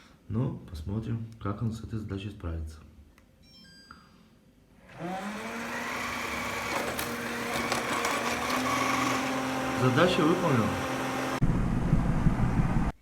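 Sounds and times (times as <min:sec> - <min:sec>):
robot vacuum motor whine: 0:04.8 - 0:11.4.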